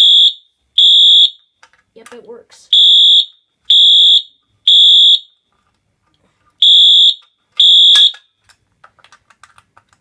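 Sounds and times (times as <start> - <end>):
fire alarm horn blasts: 2.7 - 5.4, 6.6 - 8.2.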